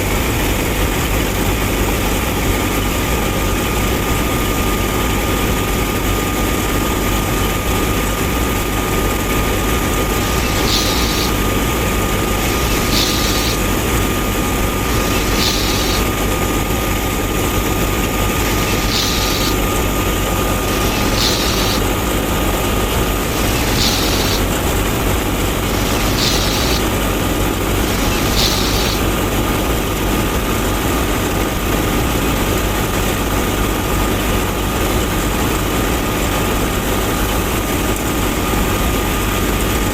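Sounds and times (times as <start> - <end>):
small motor whirring: 10.0 - 16.3, 17.9 - 24.8, 25.4 - 29.1.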